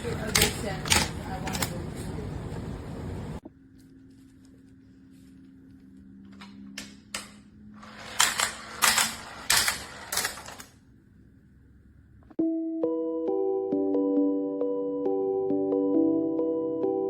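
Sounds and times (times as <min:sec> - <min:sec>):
wooden toy cars clacking: 0:00.0 - 0:01.9, 0:07.2 - 0:10.8.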